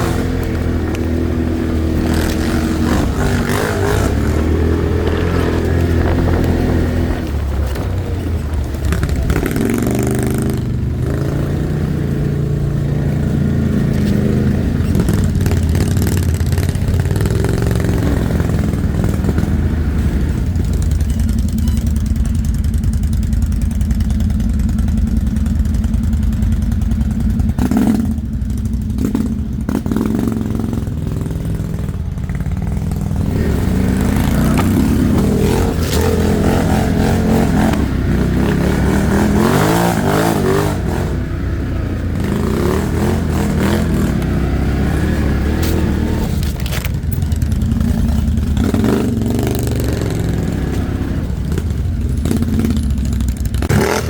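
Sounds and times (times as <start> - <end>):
quad bike engine revving: 0.0 - 54.0
rattling and clatter: 13.3 - 41.2, 42.1 - 54.0.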